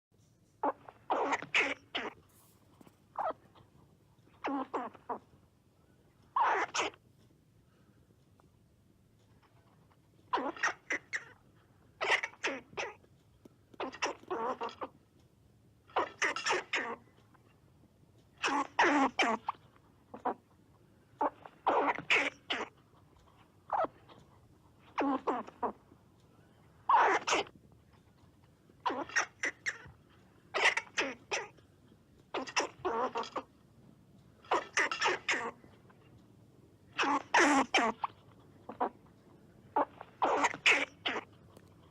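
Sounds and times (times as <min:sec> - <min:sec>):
squirrel chattering calls: 0:00.6 - 0:02.2, 0:03.2 - 0:03.5, 0:04.3 - 0:05.2, 0:06.3 - 0:07.0, 0:10.3 - 0:11.4, 0:12.0 - 0:13.0, 0:13.8 - 0:14.9, 0:15.9 - 0:17.0, 0:18.4 - 0:20.4, 0:21.2 - 0:22.8, 0:23.6 - 0:24.2, 0:24.8 - 0:25.8, 0:26.8 - 0:27.5, 0:28.8 - 0:31.6, 0:32.3 - 0:33.5, 0:34.4 - 0:35.7, 0:36.9 - 0:39.0, 0:39.7 - 0:41.4.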